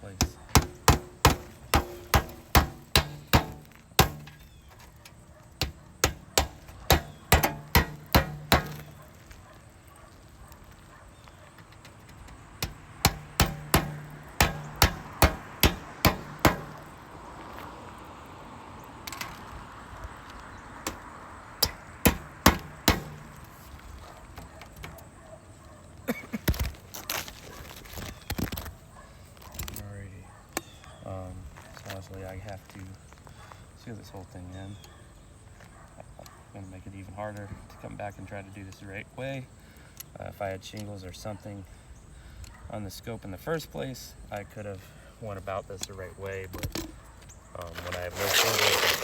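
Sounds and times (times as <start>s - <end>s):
hammer striking nails on roof: 0.2s - 4.5s, 5.6s - 8.9s, 12.6s - 16.9s, 20.8s - 23.7s.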